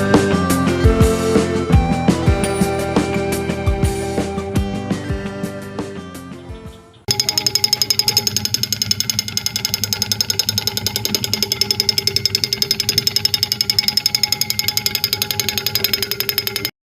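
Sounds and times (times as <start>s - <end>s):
toy woodpecker tapping on metal: 7.1s - 16.8s.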